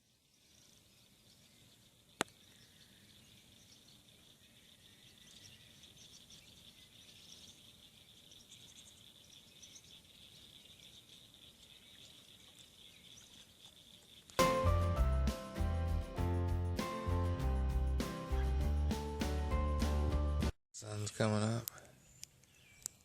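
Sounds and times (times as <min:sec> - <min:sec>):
high-pitched insect chorus: 0:03.1 - 0:16.0.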